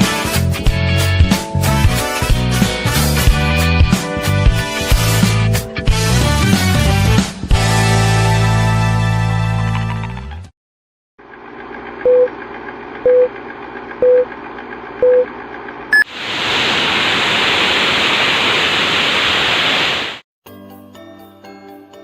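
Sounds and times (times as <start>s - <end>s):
loud static hiss: 16.0s - 20.2s.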